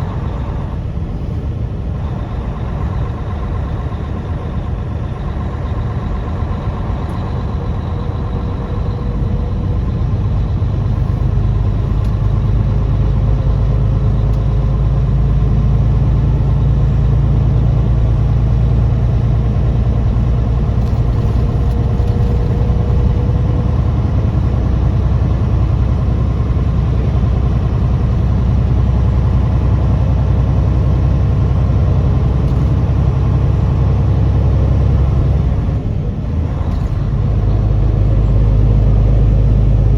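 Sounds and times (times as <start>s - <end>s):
truck engine droning: 0.0s - 39.9s.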